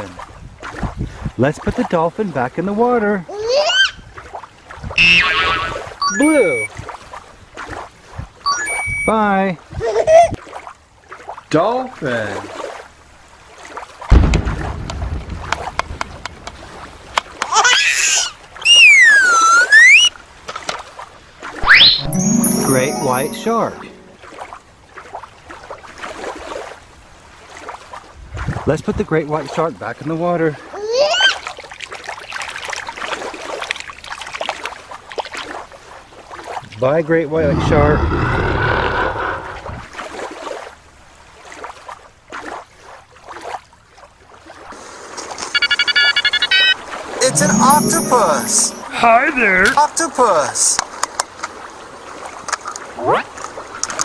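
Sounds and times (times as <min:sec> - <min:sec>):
water splashing and sloshing: 0:00.0 - 0:37.4, 0:39.5 - 0:54.0
dolphin squeak: 0:05.0 - 0:06.7, 0:08.5 - 0:09.1, 0:17.6 - 0:20.1, 0:21.6 - 0:22.1
dolphin whistle: 0:05.0 - 0:06.7, 0:08.5 - 0:09.1, 0:18.6 - 0:20.1, 0:21.6 - 0:22.2.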